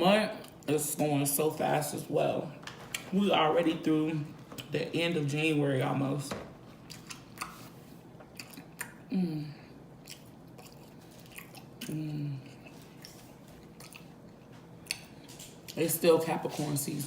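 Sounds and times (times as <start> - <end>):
person chewing: 6.8 - 15.8.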